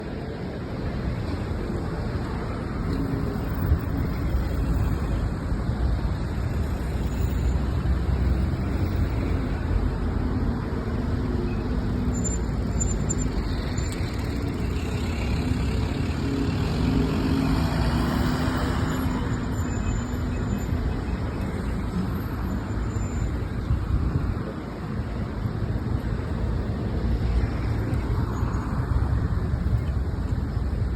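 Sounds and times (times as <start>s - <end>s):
cars and buses passing: 0.0s - 30.9s.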